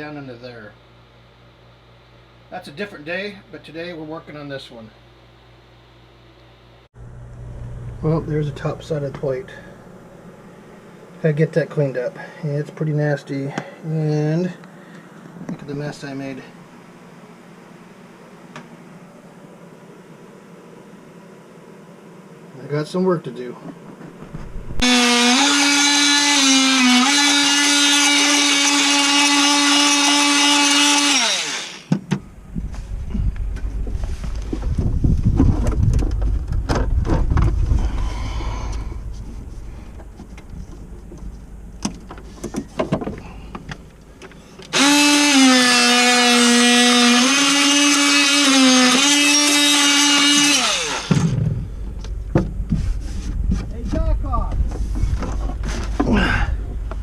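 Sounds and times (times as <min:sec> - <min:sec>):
low handling rumble: 0:07.0 - 0:11.0, 0:24.1 - 0:24.8, 0:32.2 - 0:44.4, 0:51.5 - 0:57.0
electric drill whining: 0:24.8 - 0:31.9, 0:44.6 - 0:51.6.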